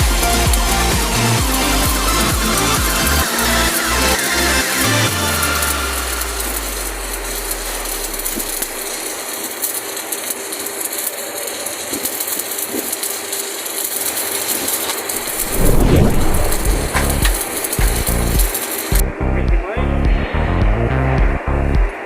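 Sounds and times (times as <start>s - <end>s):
welding arc crackling: 0.0s - 19.0s
low swell: 15.2s - 17.4s
low bass note: 15.6s - 17.4s.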